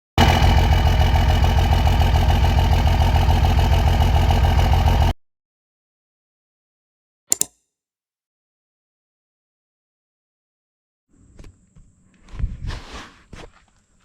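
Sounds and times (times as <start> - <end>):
diesel truck engine idling: 0.2 - 5.2.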